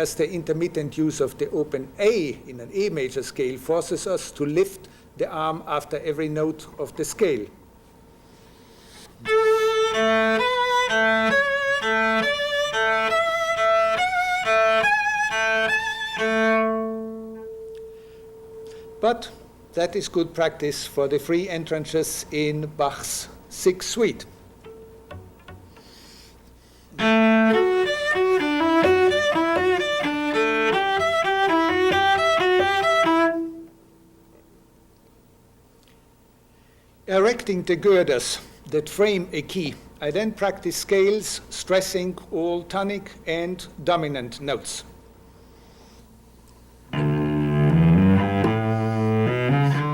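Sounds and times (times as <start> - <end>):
cello bowing a scale: 9.2 - 19.2, 24.6 - 33.8, 46.9 - 49.9.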